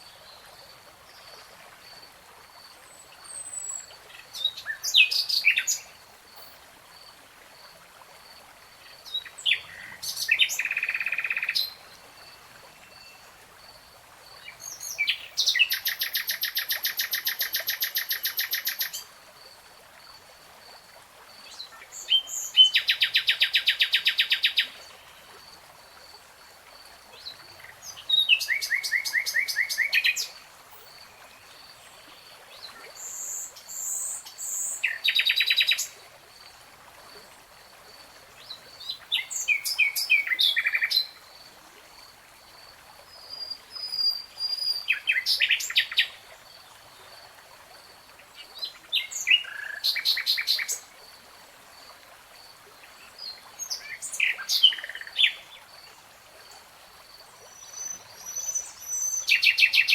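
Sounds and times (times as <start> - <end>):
songbird chirps and trills: 38.4 - 41.2.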